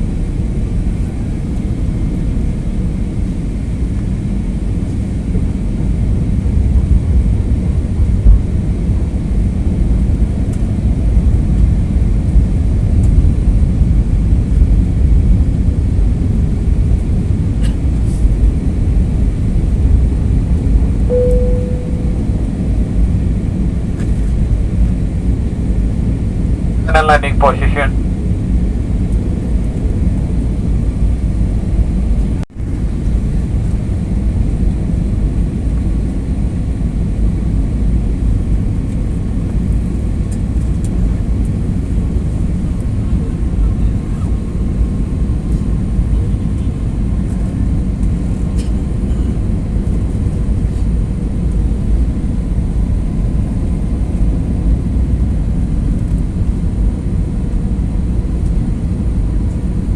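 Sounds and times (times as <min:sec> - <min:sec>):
faint steady whine: 0:21.1 - 0:22.8, 0:26.9 - 0:27.9
airliner cabin rumble: 0:26.8 - 0:28.0.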